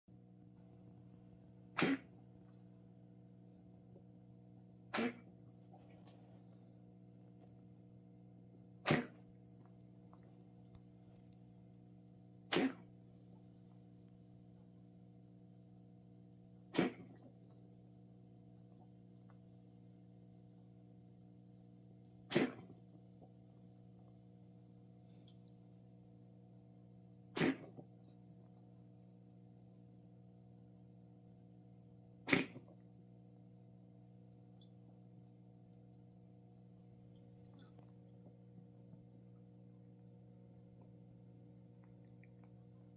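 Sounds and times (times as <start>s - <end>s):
cat coughing: 1.7s - 2.2s, 4.9s - 5.4s, 8.8s - 9.3s, 12.5s - 12.9s, 16.7s - 17.3s, 22.3s - 22.8s, 27.3s - 27.9s, 32.2s - 32.7s.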